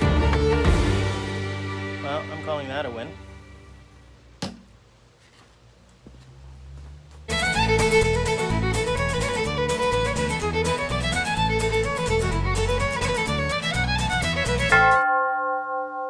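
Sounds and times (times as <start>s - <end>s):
fast fiddle tune: 0.0s - 3.3s, 7.3s - 15.0s
steady bass accompaniment: 0.0s - 4.0s, 7.3s - 15.0s.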